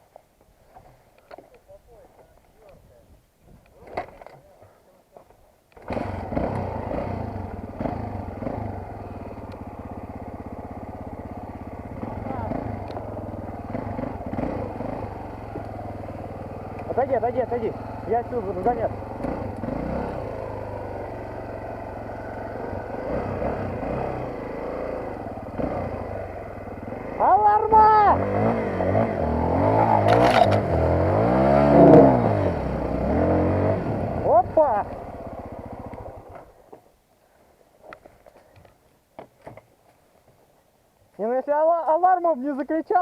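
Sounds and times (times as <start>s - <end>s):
motorcycle engine revving: 5.7s - 36.6s.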